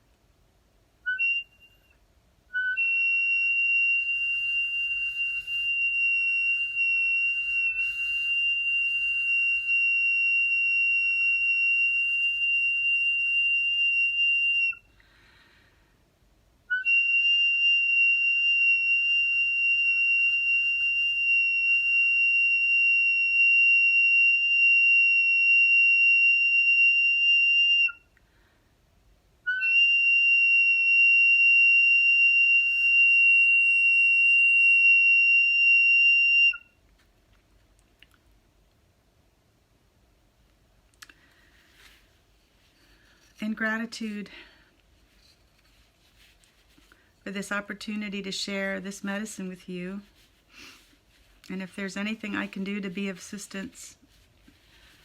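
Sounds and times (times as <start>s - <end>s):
high-pitched flute notes: 1.1s - 14.9s.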